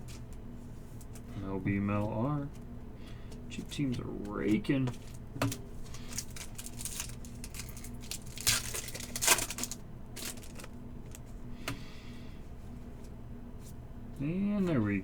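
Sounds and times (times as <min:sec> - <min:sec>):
cards rustling: 0:00.0 - 0:11.4
steady low hum: 0:00.0 - 0:15.0
card wrappers crinkling and tearing: 0:05.8 - 0:11.2.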